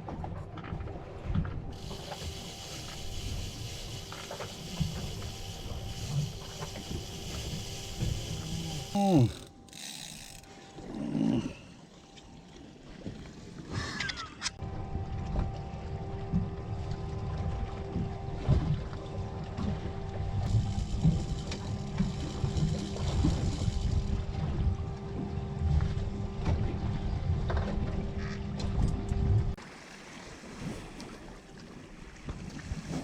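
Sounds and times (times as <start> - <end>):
boat motor humming: 0.0 - 32.4
wind rumbling on microphone: 16.4 - 29.6.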